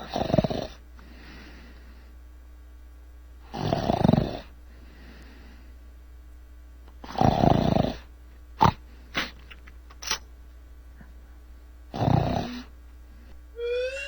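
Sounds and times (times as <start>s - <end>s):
loud rough snores: 0.0s - 0.8s, 3.5s - 4.5s, 7.0s - 8.8s, 11.9s - 12.7s.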